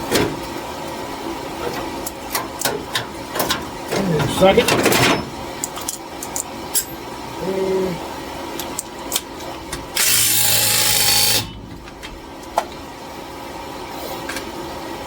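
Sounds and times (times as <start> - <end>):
power tool spinning lug nut: 10.0 - 11.6.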